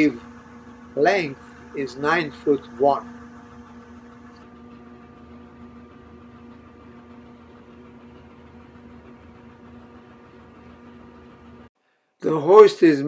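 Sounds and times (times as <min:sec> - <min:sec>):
steady background hum: 0:00.0 - 0:04.7.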